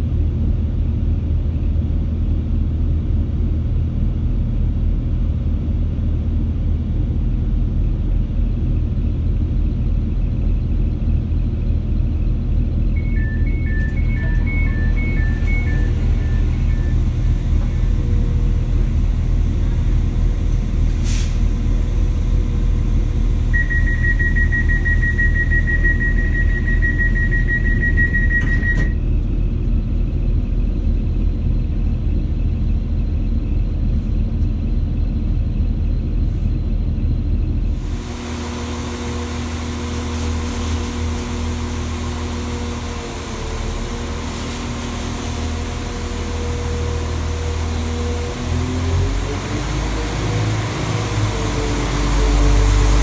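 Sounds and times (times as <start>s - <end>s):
engine and transmission whining hum: 0.0s - 53.0s
low diesel engine rumble: 0.0s - 53.0s
rapid high door warning beeps: 13.0s - 20.6s, 22.4s - 29.0s.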